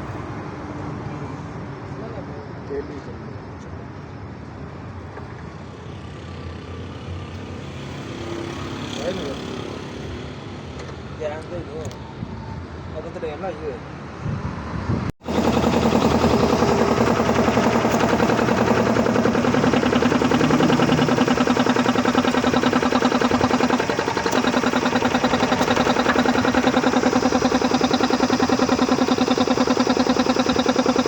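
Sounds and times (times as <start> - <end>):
piston air compressor running: 15.2 - 31.0.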